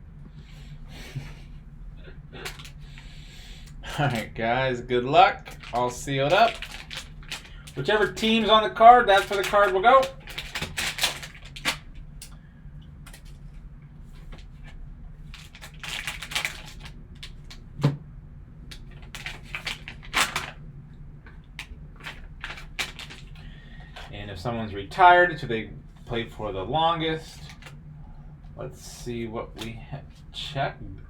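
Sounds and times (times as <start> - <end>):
faint low hum: 0.0 - 31.0
packaging rustling and clicking: 2.4 - 2.8, 5.4 - 12.0, 15.3 - 17.6, 18.7 - 20.6, 21.6 - 24.1, 27.4 - 27.8.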